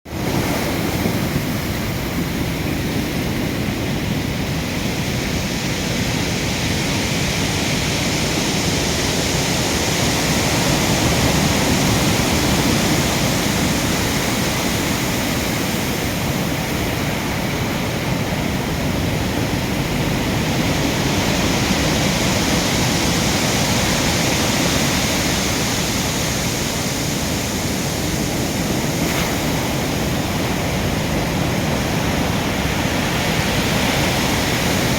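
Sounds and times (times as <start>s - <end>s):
waves breaking: 0.1s - 34.9s.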